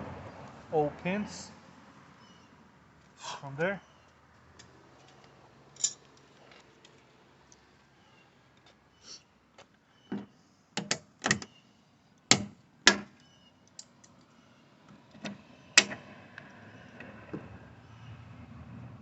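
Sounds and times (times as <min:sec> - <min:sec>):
sharp clicks and knocks: 0:10.1 - 0:11.5.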